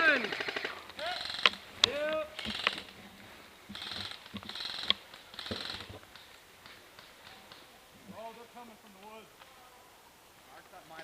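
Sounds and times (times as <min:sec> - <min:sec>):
airsoft guns firing bursts: 0:00.0 - 0:01.6, 0:02.4 - 0:02.9, 0:03.7 - 0:06.0
sharp cracks: 0:00.0 - 0:03.0, 0:03.7 - 0:09.5.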